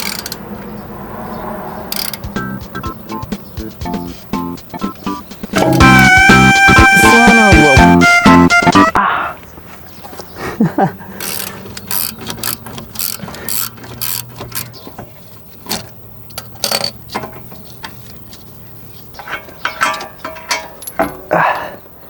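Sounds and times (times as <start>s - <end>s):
socket ratchet clicking: 0.0s - 0.4s, 1.9s - 2.4s, 11.2s - 14.8s.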